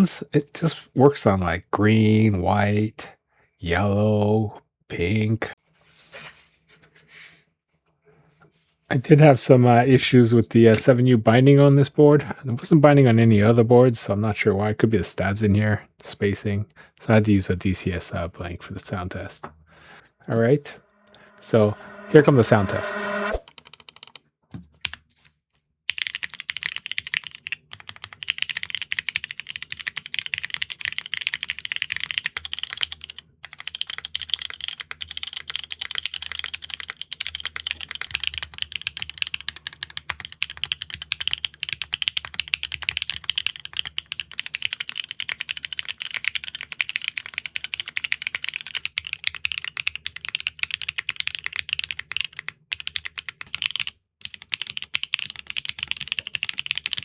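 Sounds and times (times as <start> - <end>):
fast typing on mechanical keyboard: 23.5 - 24.2, 25.9 - 57.0.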